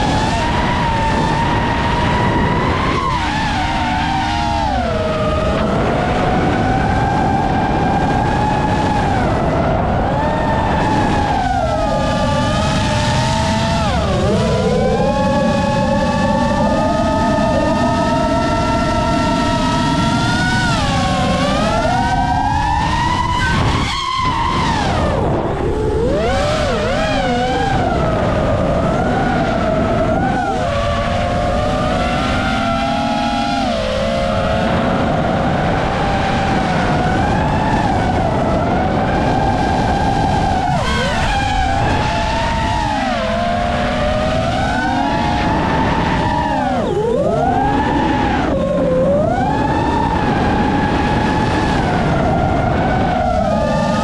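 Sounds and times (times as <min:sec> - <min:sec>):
quadcopter motors whining: 0:00.0 - 0:54.0.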